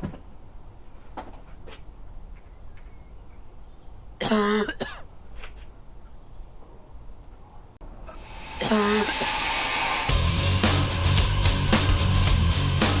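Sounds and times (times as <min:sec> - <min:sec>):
person coughing: 0:04.2 - 0:05.1, 0:08.6 - 0:09.5.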